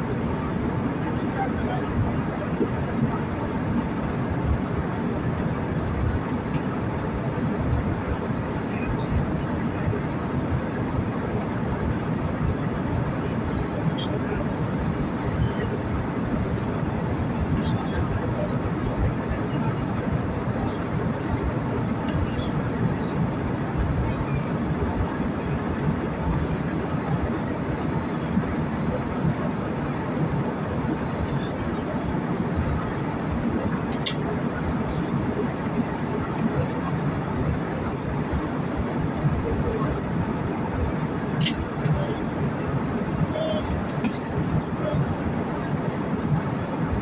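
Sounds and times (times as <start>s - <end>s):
airliner cabin airflow and engine noise: 0.0s - 47.0s.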